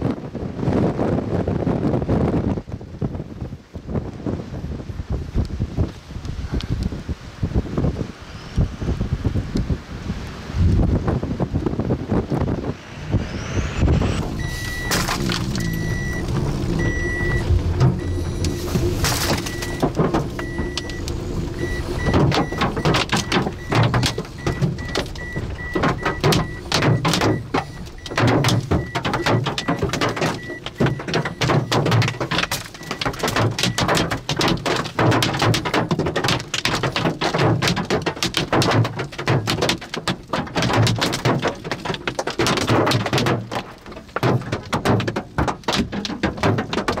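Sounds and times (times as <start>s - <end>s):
hailstones hammering vehicle: 10.7s - 47.0s
electronic beeps: 12.9s - 33.9s.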